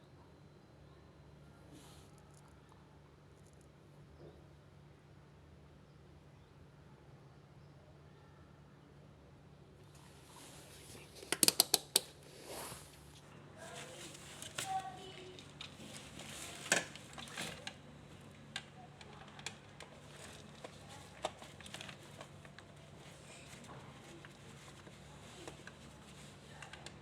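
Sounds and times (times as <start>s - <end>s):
faint low hum: 0.0s - 27.0s
tools clicking and knocking: 11.3s - 12.1s.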